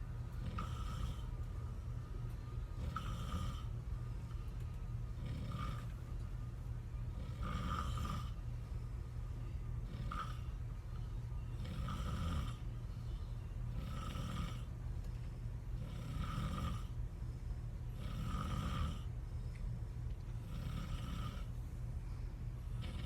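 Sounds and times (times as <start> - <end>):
steady low hum: 0.0 - 23.0
person snoring: 0.4 - 1.3, 2.8 - 3.7, 5.2 - 5.9, 7.2 - 8.4, 9.8 - 10.4, 11.6 - 12.7, 13.7 - 14.7, 15.8 - 17.0, 17.9 - 19.1, 20.4 - 21.5, 22.8 - 23.0.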